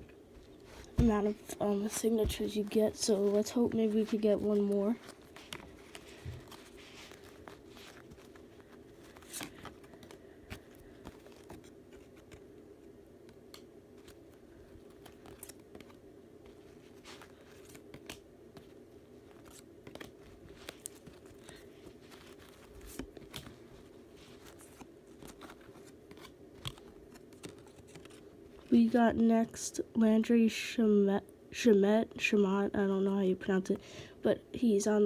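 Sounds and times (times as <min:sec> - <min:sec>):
steady low hum: 0:00.0 - 0:35.0
cards clicking and rustling: 0:00.6 - 0:28.7
wrappers crinkling and tearing: 0:14.0 - 0:16.0.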